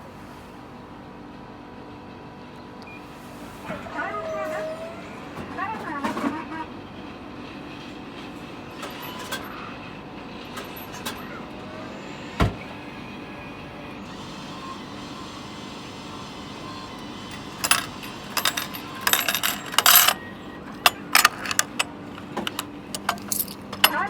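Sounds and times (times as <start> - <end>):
steady background hum: 0.0 - 24.0
coins clinking into machine: 8.8 - 9.6, 10.5 - 11.4, 16.8 - 24.0.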